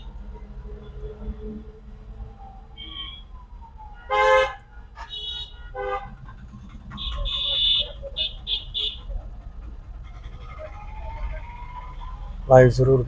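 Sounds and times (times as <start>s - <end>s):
vehicle horns honking: 4.1s - 6.2s, 6.9s - 9.1s.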